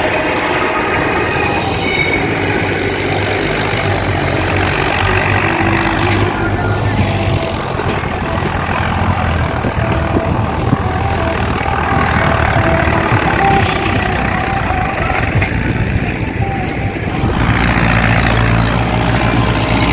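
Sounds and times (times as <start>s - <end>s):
tractor diesel engine rumbling: 0.0s - 19.9s.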